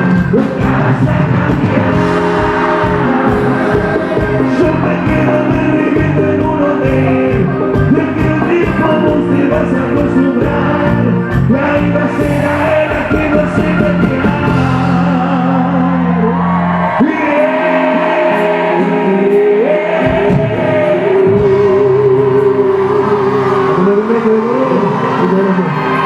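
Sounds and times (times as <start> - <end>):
live band playing loud: 0.0 - 16.4, 17.1 - 26.0
bass: 0.0 - 17.6, 18.4 - 26.0.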